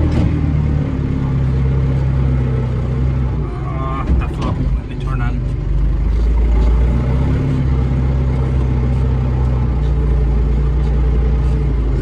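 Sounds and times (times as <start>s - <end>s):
tractor diesel engine under load: 0.0s - 12.0s.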